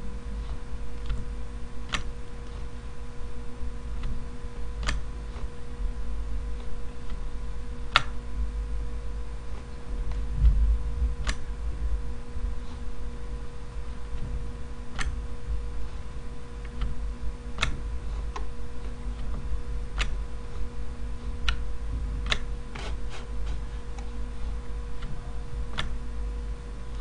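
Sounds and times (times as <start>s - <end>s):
low electrical hum: 0.0s - 27.0s
computer mouse clicks: 1.9s - 2.1s, 4.8s - 5.5s, 7.9s - 8.2s, 11.2s - 11.4s, 14.9s - 15.2s, 17.6s - 20.2s, 21.4s - 21.6s, 22.2s - 23.0s, 25.0s - 26.0s.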